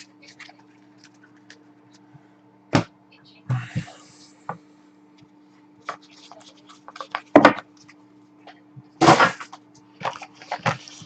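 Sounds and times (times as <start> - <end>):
cards and cardboard rustling: 5.8 - 8.0, 9.1 - 11.0.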